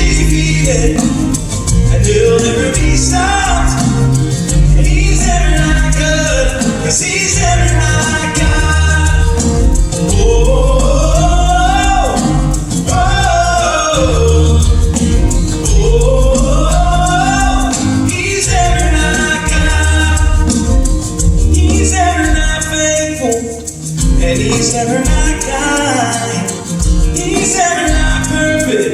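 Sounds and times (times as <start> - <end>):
bass notes: 0.0 - 23.0
hand percussion: 0.0 - 28.9
person singing: 0.0 - 28.9.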